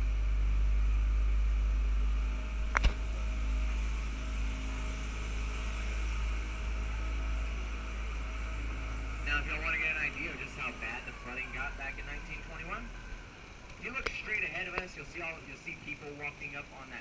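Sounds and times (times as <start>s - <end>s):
boat engine rumble: 0.0s - 17.0s
sharp click: 2.7s - 3.0s.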